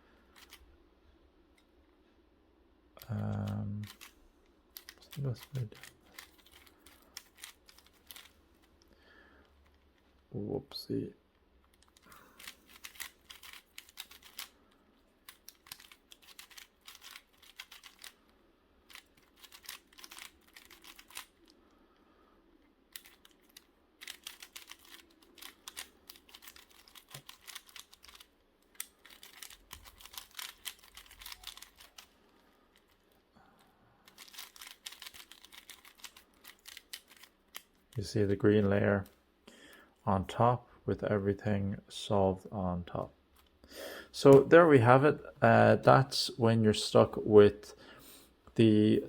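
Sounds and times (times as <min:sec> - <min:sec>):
plastic puzzle cube clicks: 0:11.7 - 0:14.5, 0:22.9 - 0:32.1.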